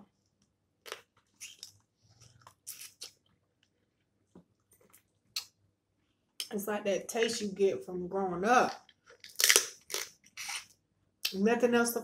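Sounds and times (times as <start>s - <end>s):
chewing and crab shell cracking: 8.8s - 10.6s.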